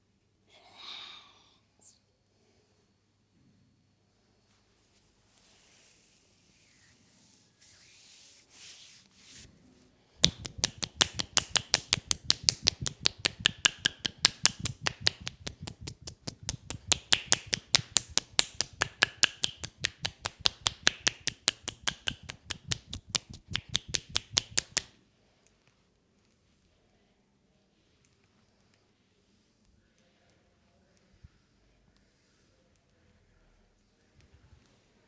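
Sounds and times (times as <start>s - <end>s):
hands slapping and tapping skin: 10.2s - 24.9s.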